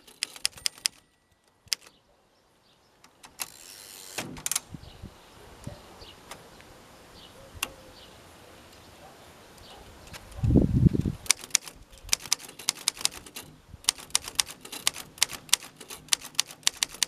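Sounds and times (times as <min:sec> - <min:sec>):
typewriter clicks: 0:00.0 - 0:01.1, 0:01.7 - 0:01.9, 0:11.2 - 0:17.0
typewriter mechanism rasping: 0:00.0 - 0:01.1, 0:11.2 - 0:17.0.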